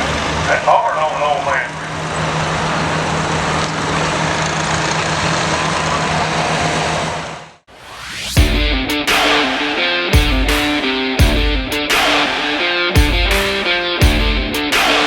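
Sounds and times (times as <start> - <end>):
guitar music: 8.4 - 15.0.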